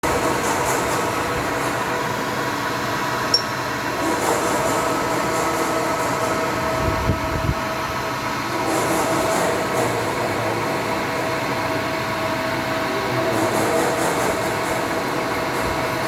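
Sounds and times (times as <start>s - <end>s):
lathe machine hum: 0.0s - 16.0s.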